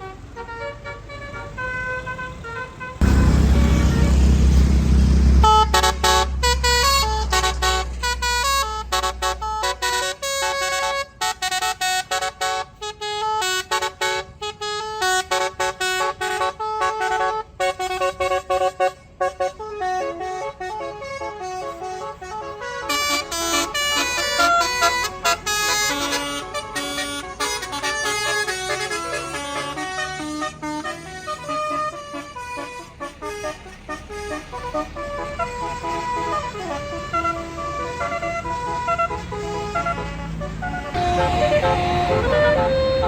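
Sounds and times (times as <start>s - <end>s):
low engine rumble: 0.0s - 11.1s, 19.8s - 43.0s
bus horn playing honking melody: 0.0s - 43.0s.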